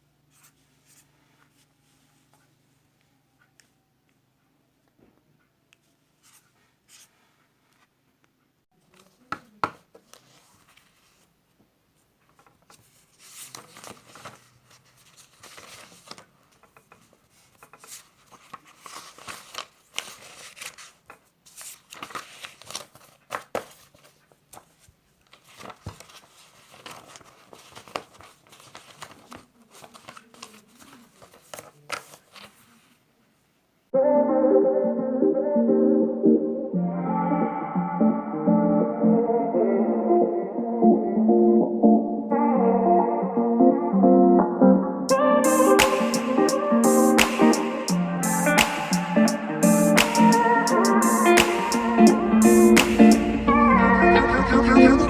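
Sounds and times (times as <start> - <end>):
paper rustling: 0.3 - 2.5, 6.2 - 7.9, 8.8 - 11.3, 12.0 - 33.0.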